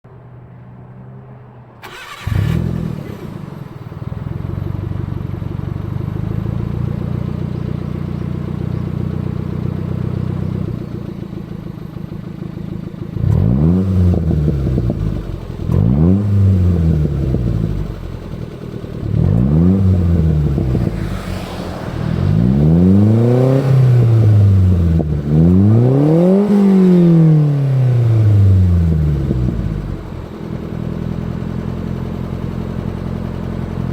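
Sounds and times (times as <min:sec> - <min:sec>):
car engine idling and revving: 0:00.1 - 0:33.9.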